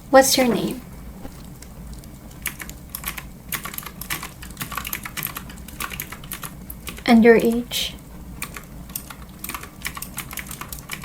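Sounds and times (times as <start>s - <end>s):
mechanical keyboard typing: 2.3s - 11.0s.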